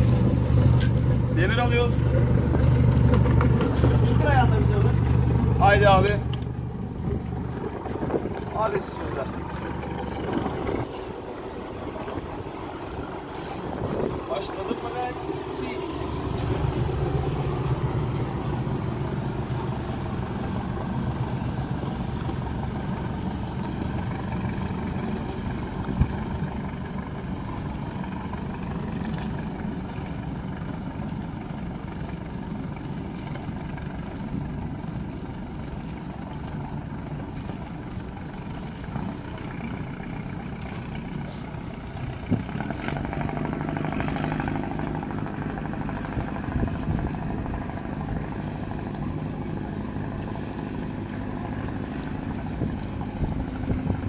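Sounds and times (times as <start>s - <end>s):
boat engine running: 0.0s - 54.0s.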